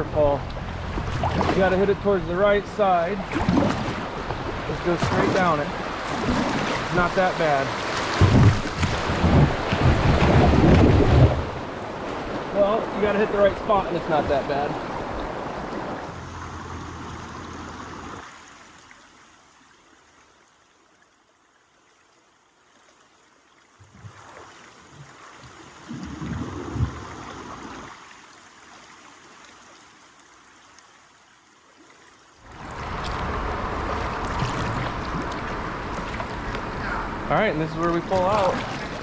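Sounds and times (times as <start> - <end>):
creek water rushing and gurgling: 0.0 - 39.0
low knocks: 8.1 - 11.6.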